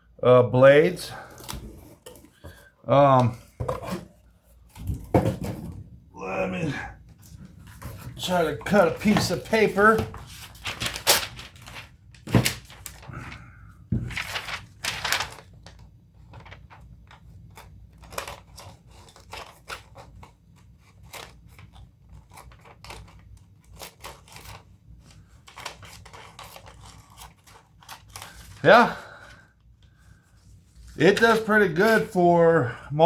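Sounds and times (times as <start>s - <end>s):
knocks of handling: 3.2s - 6.0s
paper rustling: 7.2s - 29.3s, 29.9s - 32.3s
scissors snipping paper: 25.5s - 28.4s.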